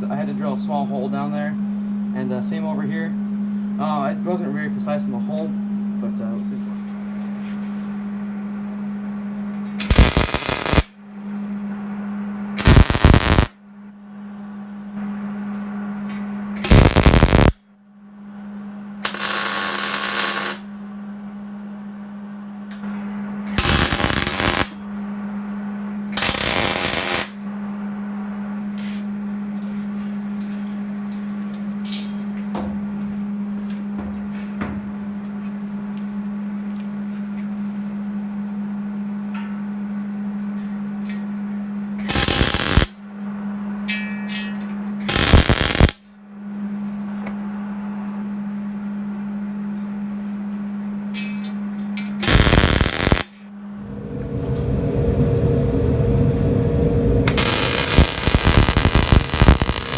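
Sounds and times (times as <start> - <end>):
steady low hum: 0.0 - 43.9, 44.6 - 59.9
arc welding crackling: 9.8 - 11.0, 12.6 - 13.6, 16.6 - 17.6, 19.0 - 20.7, 23.5 - 24.8, 26.2 - 27.4, 42.0 - 43.0, 45.0 - 46.0, 52.2 - 53.3, 57.3 - 59.9.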